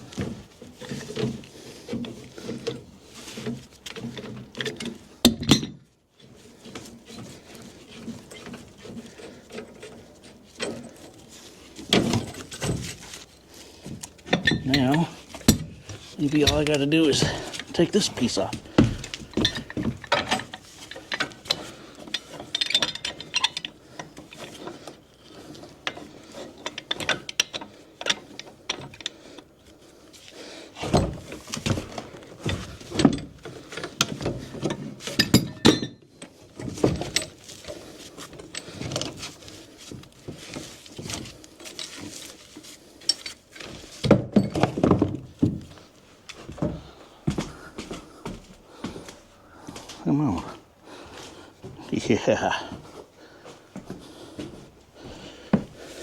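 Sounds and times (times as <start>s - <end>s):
heavy thuds: 13.8s - 20.0s
demolition knocks and thuds: 13.9s - 20.3s, 44.0s - 45.7s.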